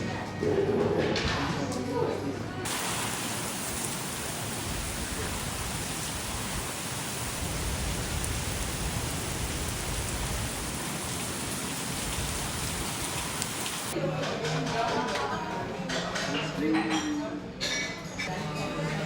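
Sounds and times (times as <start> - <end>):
heavy rain hiss: 2.7 - 14.0.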